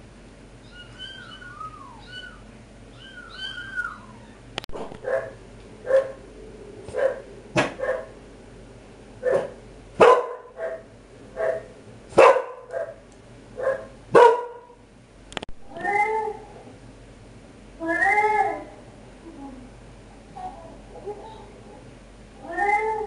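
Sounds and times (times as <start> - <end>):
dog barking: 5.0 - 6.2, 6.9 - 8.1, 9.2 - 13.0, 13.6 - 14.8.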